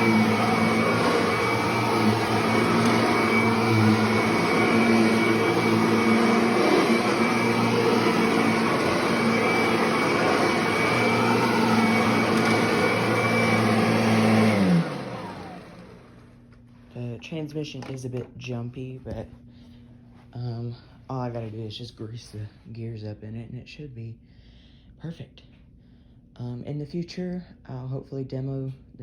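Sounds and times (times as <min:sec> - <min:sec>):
vacuum motor spinning down: 0:00.0 - 0:16.4
vacuum cleaner running: 0:00.0 - 0:18.1.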